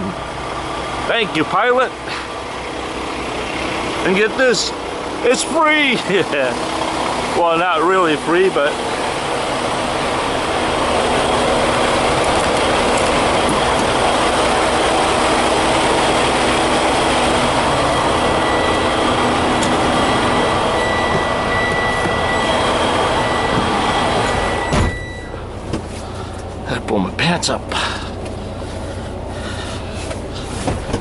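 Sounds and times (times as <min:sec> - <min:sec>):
truck engines idling: 0:00.0 - 0:31.0
held tones: 0:17.9 - 0:25.5.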